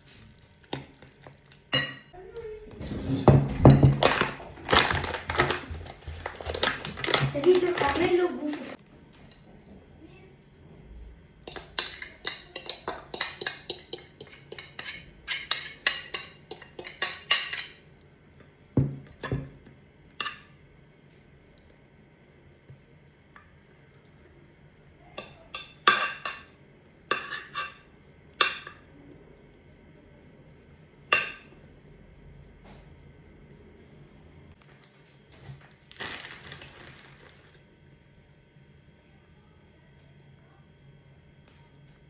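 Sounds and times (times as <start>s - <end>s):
metal utensils clinking on dishes: 11.4s - 17.8s.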